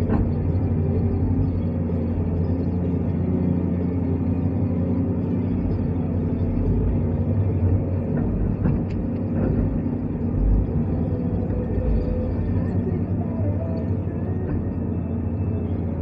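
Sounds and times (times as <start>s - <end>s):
excavator diesel engine droning: 0.0s - 16.0s.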